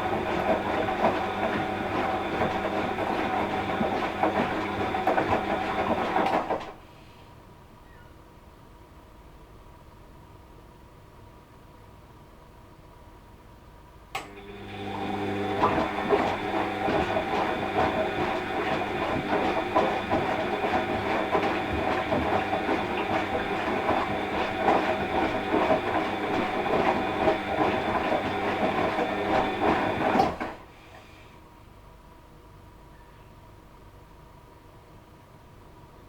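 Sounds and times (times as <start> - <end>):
washing machine drum churning: 0.0 - 6.8, 14.3 - 30.8.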